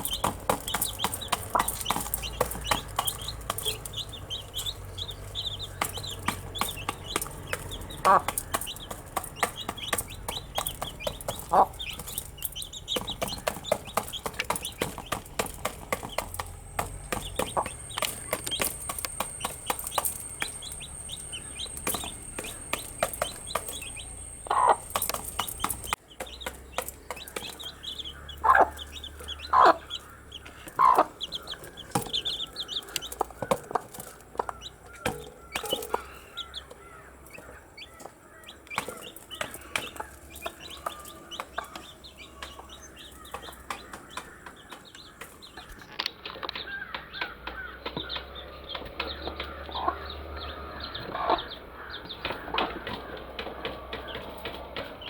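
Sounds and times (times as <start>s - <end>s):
chicks peeping and chirping: 0.0s - 55.0s.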